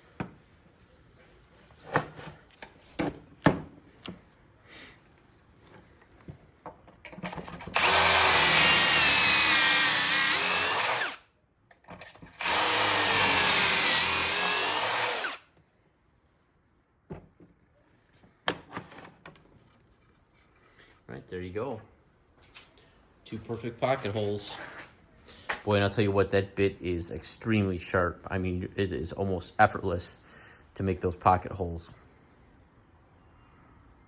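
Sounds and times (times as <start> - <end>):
power drill boring into wood: 7.7 - 11.2, 12.4 - 15.4.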